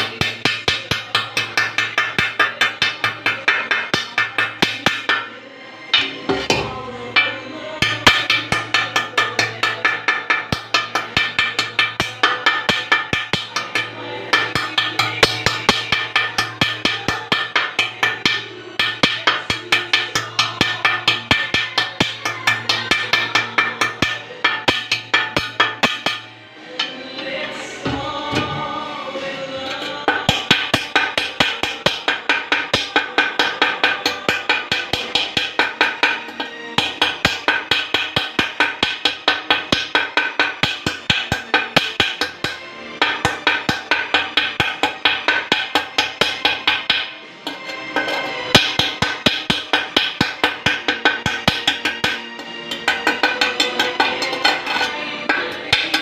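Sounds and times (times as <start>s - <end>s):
wood-block beat: 0.0s - 5.3s, 5.9s - 27.0s, 29.7s - 56.0s
held pitched music tones: 0.0s - 56.0s
tapping on ceramic tile: 29.7s - 56.0s.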